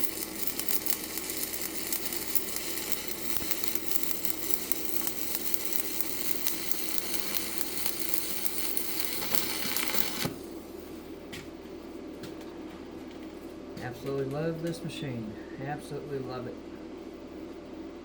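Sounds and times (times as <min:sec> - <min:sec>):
welding arc crackling: 0:00.0 - 0:10.8.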